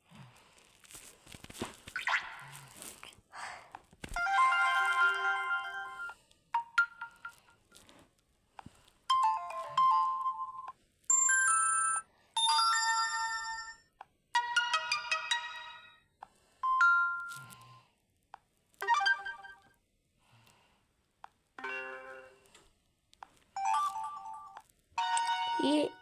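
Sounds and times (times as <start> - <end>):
phone ringtone chiming melodies: 4.2 - 7.8, 9.1 - 17.6, 18.8 - 19.7, 21.6 - 22.5, 23.6 - 26.0.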